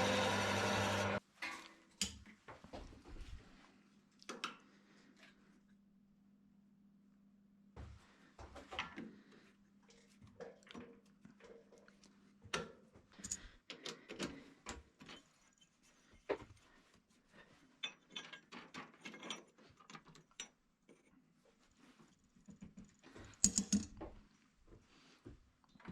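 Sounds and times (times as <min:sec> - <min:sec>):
metal tools clicking and knocking: 0:17.8 - 0:21.0, 0:22.8 - 0:24.0.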